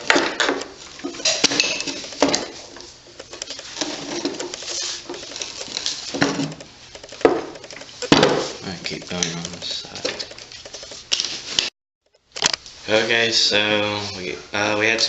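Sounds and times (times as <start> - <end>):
metal parts and tools clinking: 0.4 - 2.6, 3.2 - 8.2
sharp knocks: 3.2 - 11.0.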